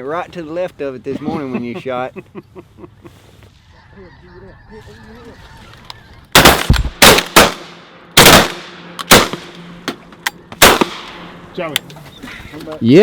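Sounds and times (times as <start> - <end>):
shotgun shots echoing: 6.3 - 9.8, 10.6 - 11.4.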